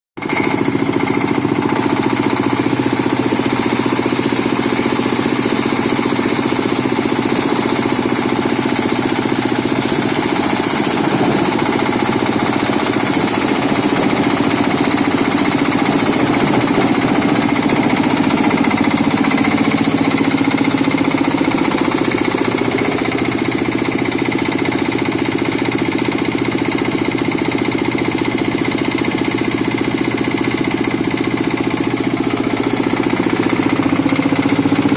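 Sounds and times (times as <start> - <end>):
vibrating sieve rattling: 0.3 - 26.4.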